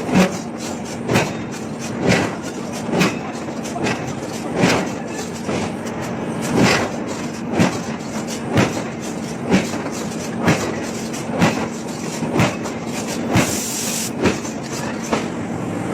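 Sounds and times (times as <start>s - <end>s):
forging hammer striking steel: 6.5s - 15.3s
short hiss: 13.4s - 14.2s.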